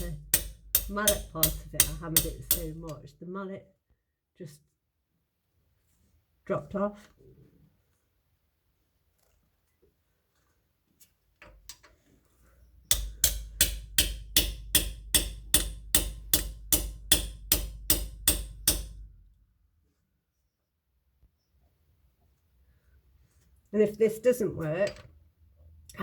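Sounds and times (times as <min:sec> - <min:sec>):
hammer striking metal bar: 0:00.0 - 0:02.9, 0:12.9 - 0:19.1.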